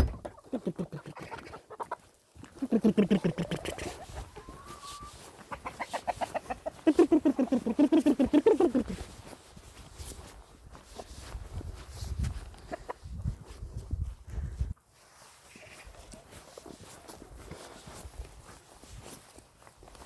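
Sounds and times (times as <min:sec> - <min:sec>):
chickens clucking: 0:00.0 - 0:09.0, 0:12.5 - 0:13.1.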